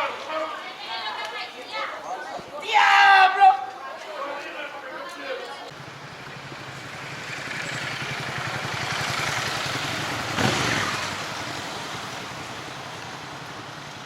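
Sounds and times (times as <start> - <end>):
vehicle passing by: 5.8 - 14.0.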